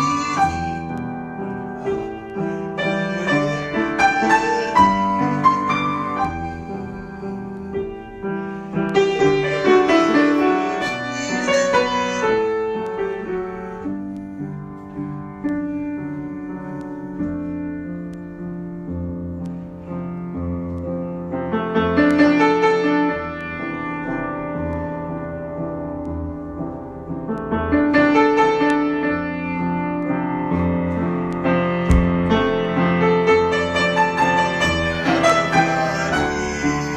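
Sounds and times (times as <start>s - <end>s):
solo piano improvisation: 0.0s - 36.9s.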